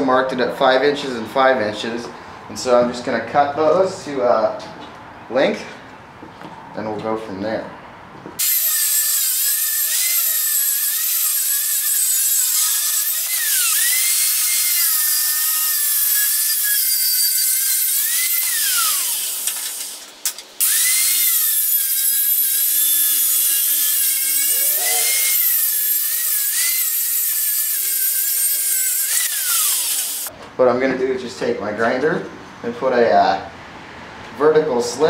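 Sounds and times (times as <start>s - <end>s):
power tool cutting steel: 8.4s - 30.3s.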